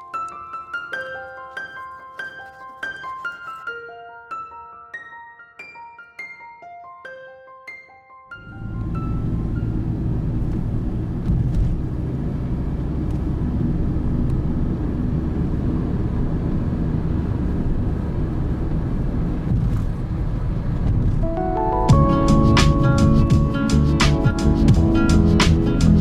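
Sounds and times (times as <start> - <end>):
vehicle engine and road noise: 8.4 - 21.2.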